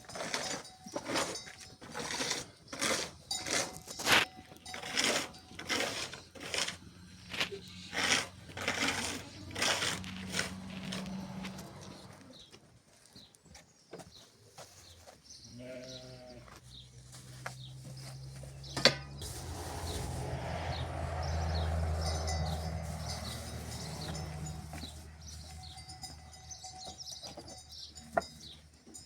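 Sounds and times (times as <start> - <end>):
tool scraping rough surface: 0.0 - 12.2, 18.8 - 26.2.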